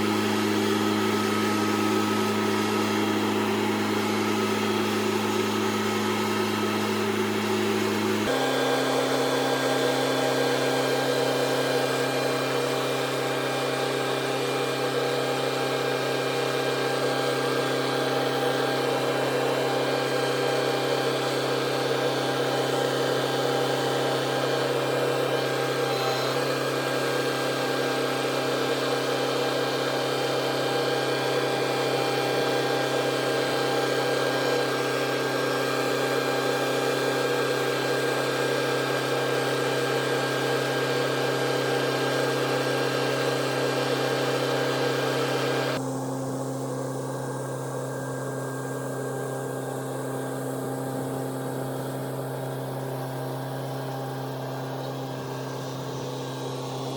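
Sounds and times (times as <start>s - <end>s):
tractor engine droning: 0.0s - 36.0s.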